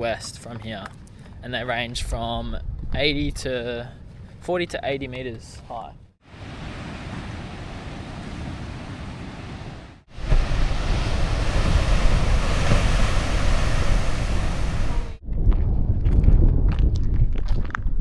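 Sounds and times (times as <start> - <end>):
wind rumble on microphone: 0.0 - 5.5, 6.3 - 18.0
wind: 0.0 - 18.0
ocean surf: 6.2 - 15.2.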